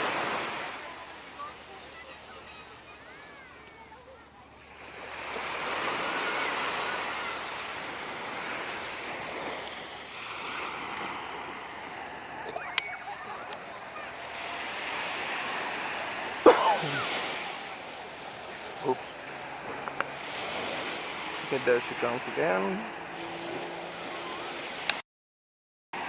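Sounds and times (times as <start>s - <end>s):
surf breaking on a beach: 0.0s - 25.0s.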